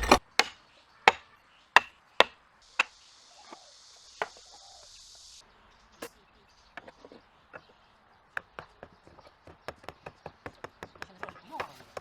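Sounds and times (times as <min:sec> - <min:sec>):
wood being struck: 0:00.0 - 0:01.2
faint steady hiss: 0:02.0 - 0:07.9.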